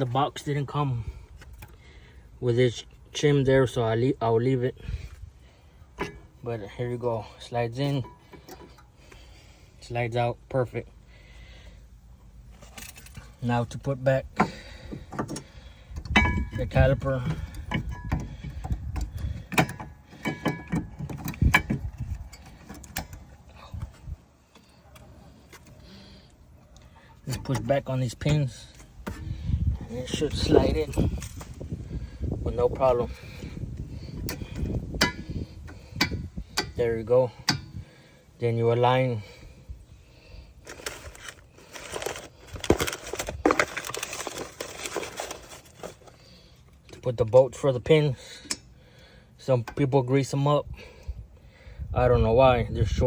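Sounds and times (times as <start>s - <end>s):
metallic clinks and knocks: 16.0s - 16.8s, 17.4s - 23.3s
sharp metal knocks: 35.0s - 35.3s.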